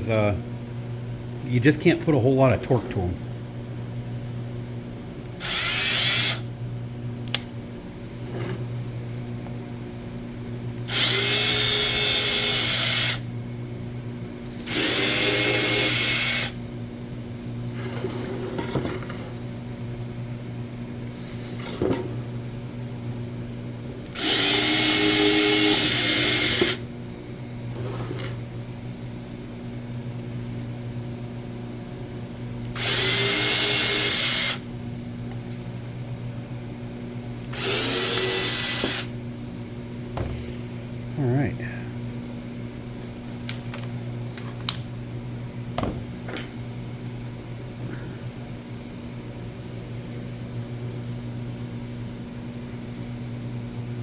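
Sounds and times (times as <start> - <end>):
steady low hum: 0.0 - 54.0
power drill driving screws: 5.4 - 6.4, 10.9 - 13.2, 14.6 - 16.6, 24.2 - 26.8, 32.8 - 34.6, 37.5 - 39.1.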